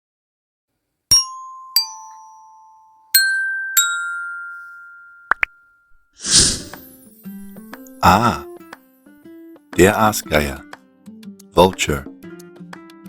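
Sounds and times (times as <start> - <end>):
bell-like chime jingle: 1.1 - 8.4.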